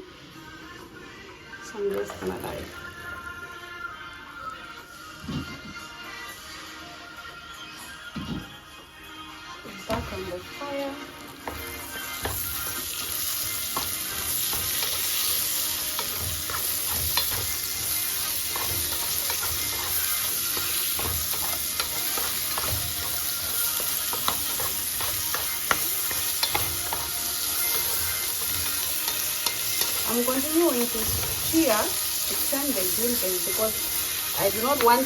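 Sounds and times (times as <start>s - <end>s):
beans sizzling in butter: 11.0s - 35.0s.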